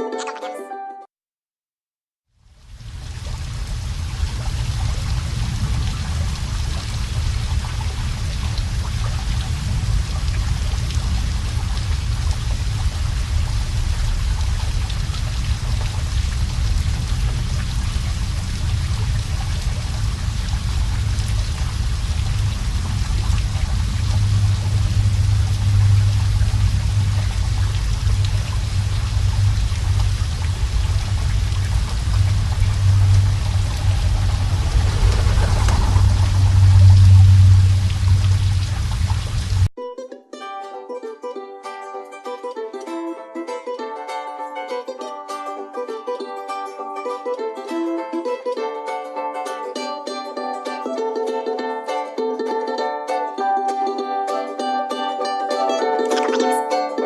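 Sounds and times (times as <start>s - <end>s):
low rumble: 2.6s - 39.7s
low steady hum: 2.8s - 39.7s
water running and splashing: 2.8s - 39.7s, 56.0s - 56.8s.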